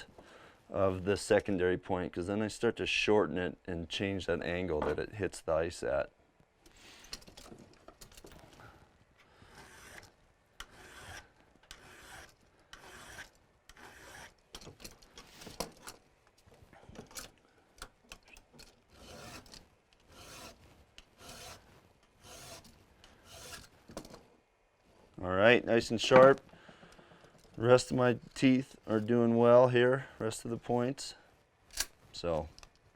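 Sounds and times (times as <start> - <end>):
metal file rasping on steel: 9.5 - 14.4, 18.9 - 19.5, 20.1 - 20.6, 21.2 - 23.7.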